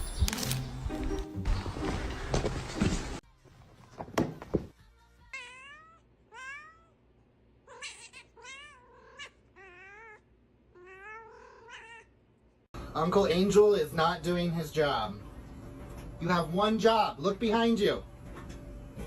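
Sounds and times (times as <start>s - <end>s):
cat meowing: 5.3s - 7.0s, 7.6s - 12.2s.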